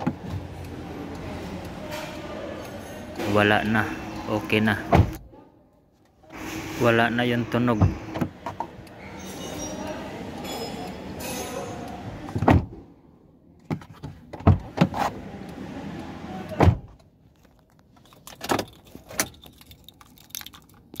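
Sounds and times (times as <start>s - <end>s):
knocks and clicks inside car: 12.3s - 12.8s.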